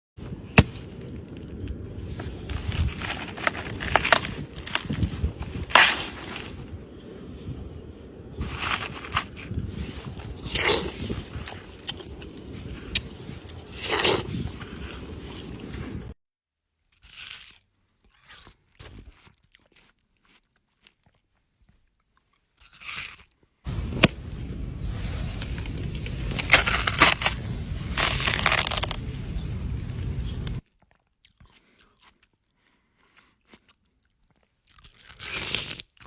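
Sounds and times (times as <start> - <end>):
crunchy bites of watermelon: 0.3 - 7.7, 8.4 - 16.2, 16.8 - 21.2, 22.0 - 24.2, 25.3 - 29.4, 33.0 - 36.0
wet chewing: 8.4 - 16.2, 16.8 - 23.4, 30.4 - 36.0.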